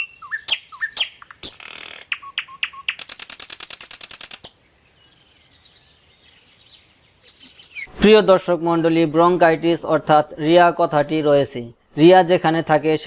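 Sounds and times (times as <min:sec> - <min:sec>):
fast rattling bird trill: 0:00.0 - 0:04.8
small birds chirping: 0:00.0 - 0:09.1.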